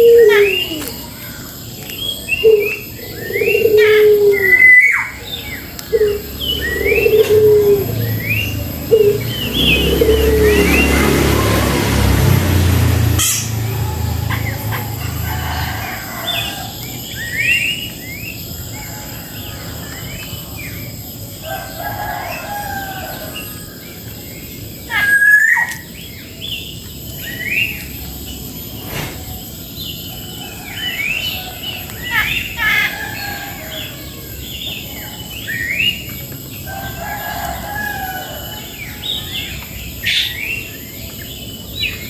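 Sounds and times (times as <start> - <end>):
low rumbling noise: 1.6 - 21.8.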